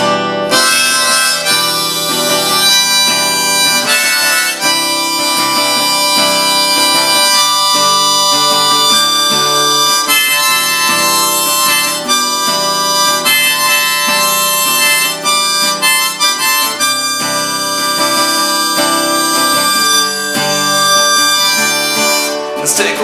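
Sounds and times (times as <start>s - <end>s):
acoustic guitar strumming: 0.0s - 23.0s
harmonica playing: 0.0s - 23.0s.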